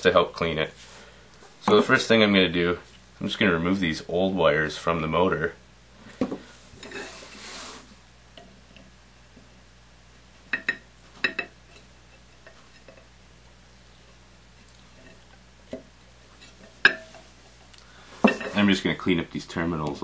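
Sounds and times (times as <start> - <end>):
soldering iron hiss: 6.8 - 8.0.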